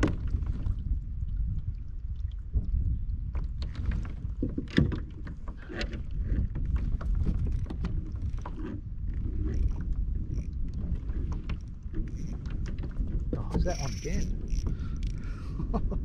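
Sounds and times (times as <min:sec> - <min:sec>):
small knocks and splashes: 0:00.0 - 0:08.8
water lapping against kayak hull: 0:00.0 - 0:16.0
wind rumble on microphone: 0:00.0 - 0:16.0.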